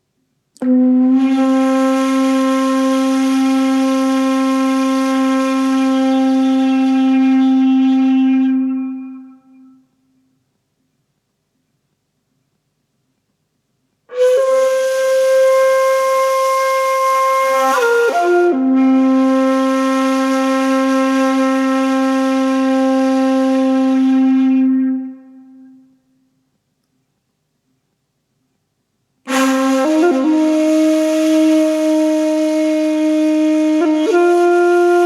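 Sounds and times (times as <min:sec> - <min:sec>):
wind instrument sustained notes: 0:29.3 - 0:35.0.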